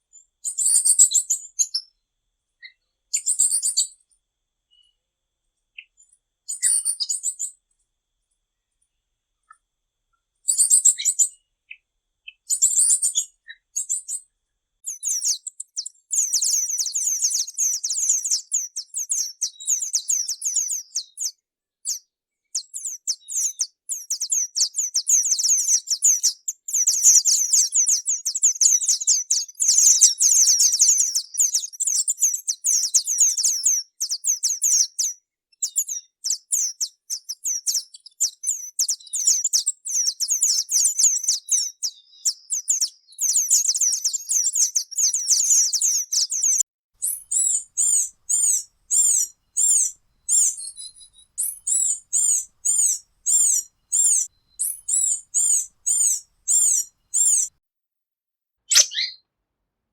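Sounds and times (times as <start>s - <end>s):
bird song high thin notes: 58.7s - 59.2s.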